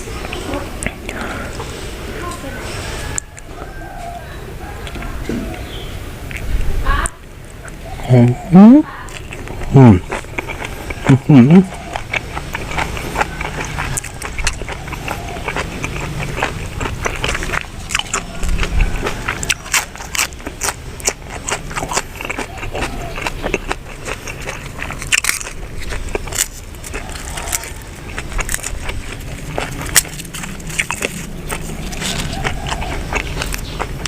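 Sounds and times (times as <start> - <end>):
person chewing: 0.0 - 4.1, 4.7 - 34.0.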